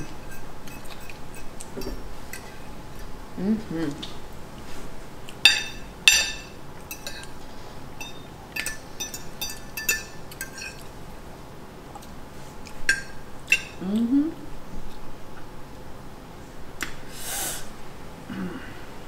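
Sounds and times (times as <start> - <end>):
cutlery clinking on dishes: 5.4 - 7.3, 8.0 - 10.9, 12.9 - 13.8.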